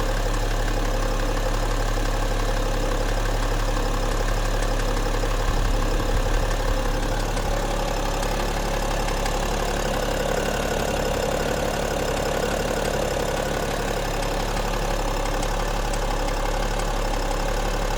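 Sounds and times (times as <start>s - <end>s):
diesel engine idling: 0.0s - 17.9s
engine ticking: 0.0s - 17.9s.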